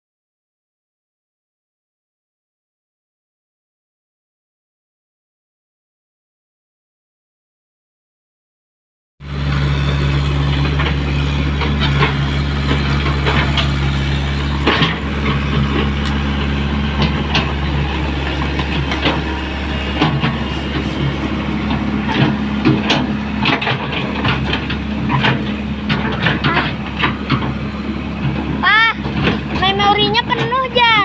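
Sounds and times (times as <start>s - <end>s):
excavator diesel engine humming: 9.2s - 31.0s.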